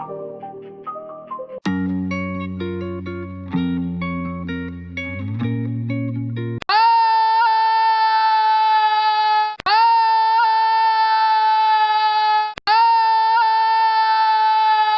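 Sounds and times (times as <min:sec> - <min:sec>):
held musical note: 0:01.7 - 0:06.6.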